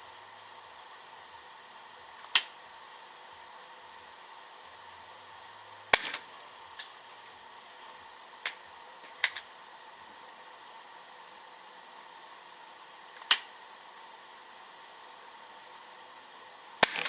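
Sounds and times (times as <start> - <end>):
air pistol firing: 5.9 - 6.2.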